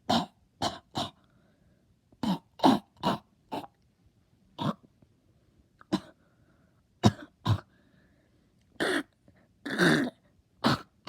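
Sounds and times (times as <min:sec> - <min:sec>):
person coughing: 0:05.9 - 0:06.2, 0:07.0 - 0:07.7.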